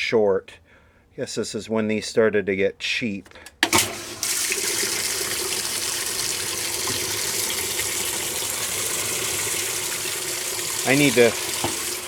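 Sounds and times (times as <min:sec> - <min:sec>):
washing machine filling with water: 0:03.6 - 0:12.0.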